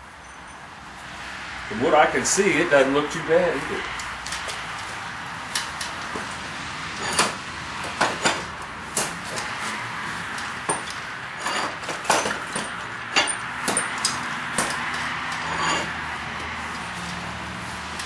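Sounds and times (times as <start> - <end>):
metallic clicks and clanks of vise: 7.0 - 9.5, 10.3 - 16.0.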